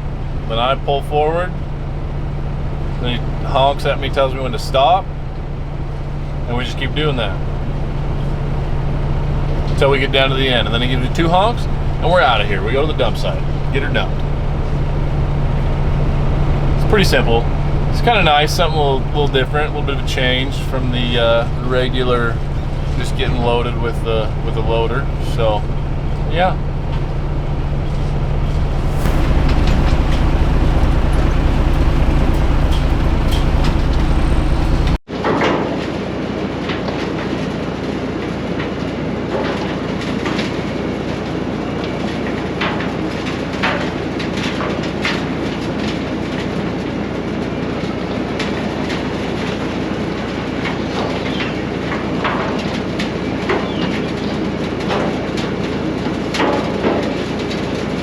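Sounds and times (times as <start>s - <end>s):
diesel truck engine running: 0.0s - 35.1s
asphalt clattering into steel truck bed: 7.4s - 35.0s.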